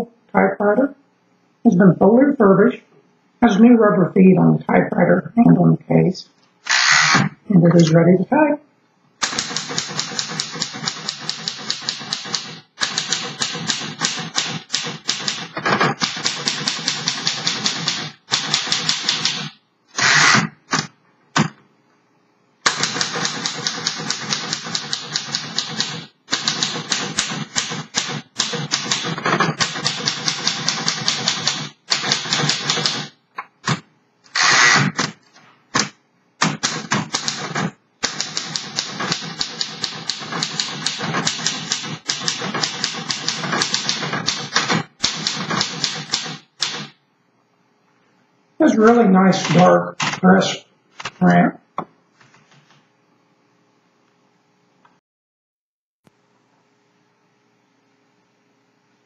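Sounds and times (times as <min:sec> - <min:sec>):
manual typewriter typing: 0:09.2 - 0:19.6, 0:22.7 - 0:33.2, 0:35.8 - 0:46.9.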